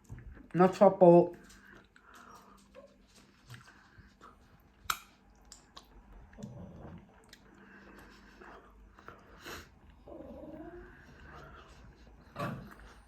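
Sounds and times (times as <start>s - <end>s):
person chewing food: 1.6s - 10.1s, 10.8s - 13.0s
wet mouth clicks: 4.8s - 6.6s.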